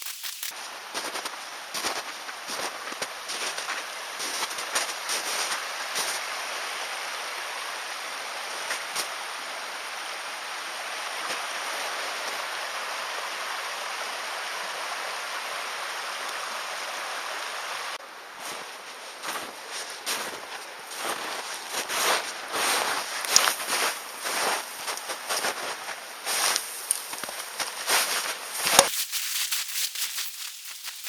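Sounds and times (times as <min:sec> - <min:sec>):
stream water rushing: 0:03.9 - 0:18.0.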